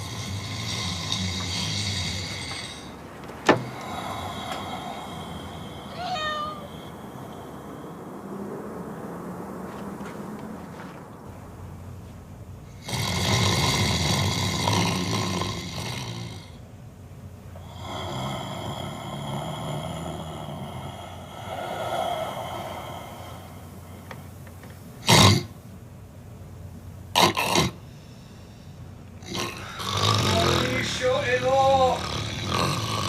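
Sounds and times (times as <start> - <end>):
loud snorts: 0.0 - 3.0, 12.7 - 16.6, 25.0 - 25.6, 27.2 - 27.8, 29.2 - 33.0
man snoring: 0.0 - 7.4, 12.7 - 16.6, 17.6 - 24.1, 29.2 - 33.0.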